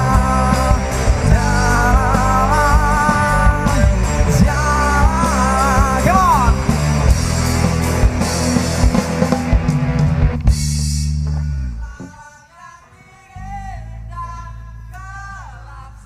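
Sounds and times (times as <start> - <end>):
live rock band playing: 0.0 - 11.9
lead guitar bending notes: 0.0 - 12.1
drums: 0.0 - 14.3.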